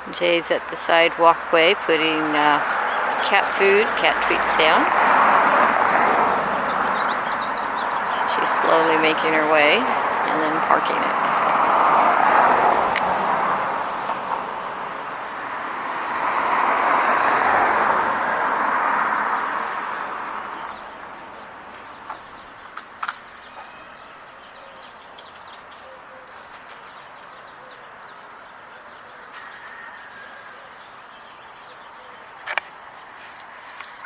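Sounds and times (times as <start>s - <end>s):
car passing: 0.0s - 25.7s.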